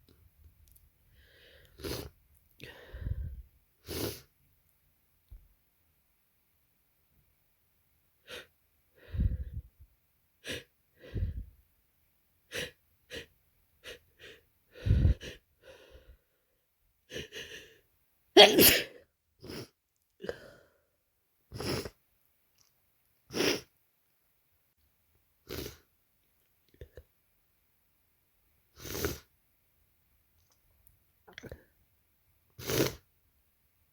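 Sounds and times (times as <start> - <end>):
person sniffling: 1.2 - 4.3, 8.2 - 9.6, 12.5 - 16.2, 17.1 - 17.8, 18.4 - 20.8, 21.5 - 22.0, 23.3 - 23.7, 25.4 - 25.9, 28.7 - 29.3, 32.6 - 33.0
person sneezing: 18.4 - 19.7.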